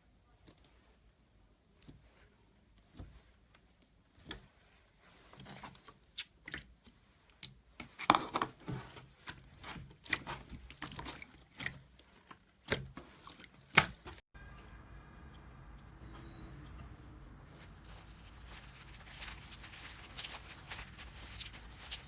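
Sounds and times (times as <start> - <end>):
slime squishing with sticky pops: 5.3 - 14.2, 17.6 - 22.0.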